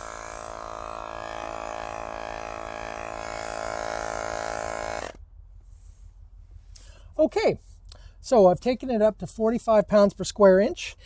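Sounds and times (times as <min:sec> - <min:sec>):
electric tyre pump buzzing: 0:00.0 - 0:05.2.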